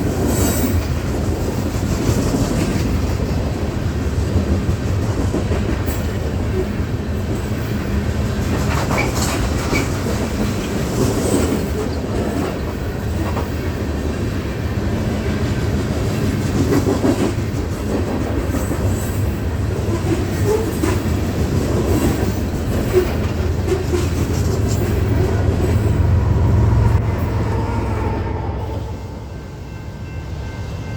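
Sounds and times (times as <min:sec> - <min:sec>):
wheels clicking over rail joints: 0:00.0 - 0:13.8, 0:15.5 - 0:26.0
freight train rumbling past: 0:00.0 - 0:30.9.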